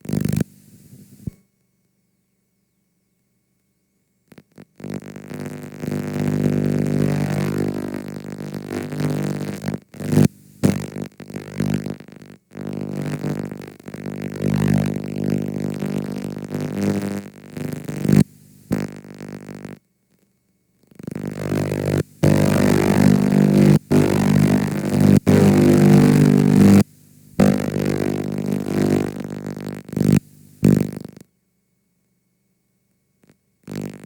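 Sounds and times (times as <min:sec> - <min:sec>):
tape hiss: 0:00.0 - 0:31.4, 0:32.8 - 0:34.0
distorted buzzing drone: 0:21.0 - 0:31.2, 0:33.7 - 0:34.0.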